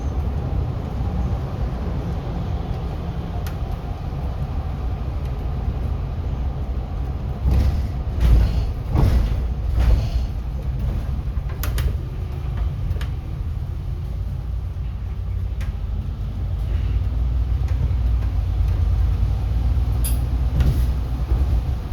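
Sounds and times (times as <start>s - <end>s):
bus engine and road rumble: 0.0s - 21.9s.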